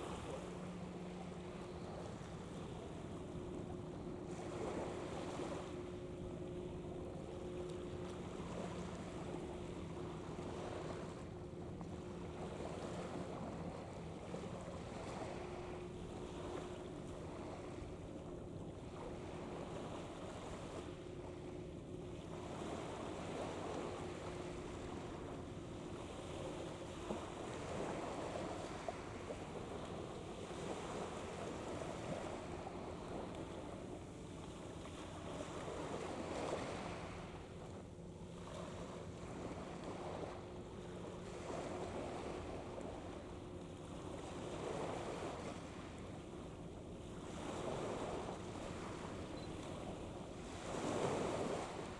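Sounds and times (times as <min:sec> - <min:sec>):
water washing at shore: 0:00.0 - 0:18.2
faint low hum: 0:00.0 - 0:51.9.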